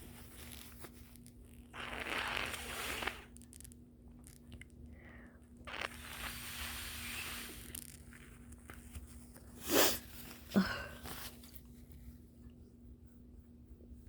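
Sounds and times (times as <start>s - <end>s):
congested nose blowing: 1.7s - 3.6s, 5.0s - 8.0s, 9.6s - 10.7s
person coughing: 9.6s - 11.2s.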